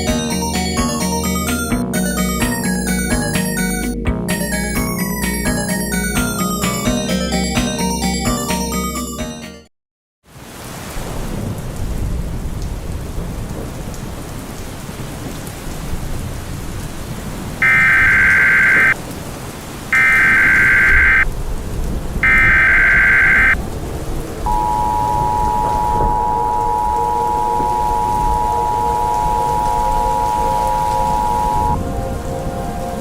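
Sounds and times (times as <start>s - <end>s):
rain: 10.2s - 33.0s
rumbling thunder: 11.0s - 19.1s, 20.0s - 33.0s
alert data bursts: 17.6s - 19.0s, 20.0s - 21.2s, 22.2s - 23.6s, 24.5s - 31.8s
two-tone alert signal: 17.6s - 19.0s, 20.0s - 21.2s, 22.2s - 23.6s, 24.5s - 31.8s.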